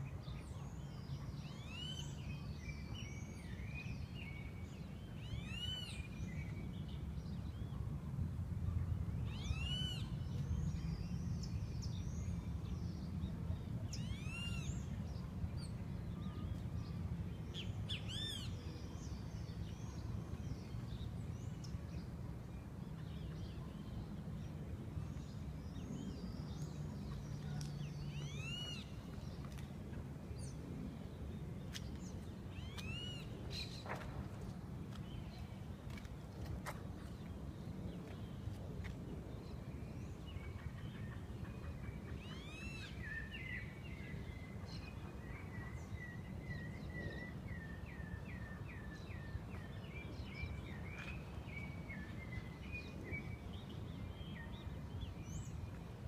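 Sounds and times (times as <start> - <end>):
low city rumble: 0.0 - 56.0.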